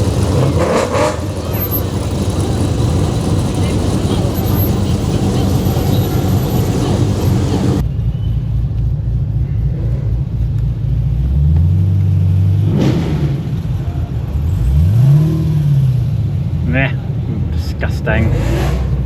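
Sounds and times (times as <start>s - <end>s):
car engine rumbling: 0.0s - 7.9s.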